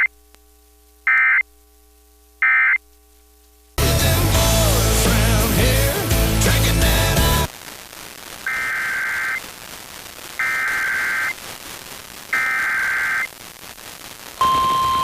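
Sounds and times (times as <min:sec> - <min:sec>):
steady warning alarm tone: 0:01.1 - 0:01.4, 0:02.4 - 0:02.8
warbling data tones: 0:01.1 - 0:01.5, 0:02.4 - 0:02.8, 0:08.4 - 0:09.6, 0:10.3 - 0:11.4, 0:12.3 - 0:13.4.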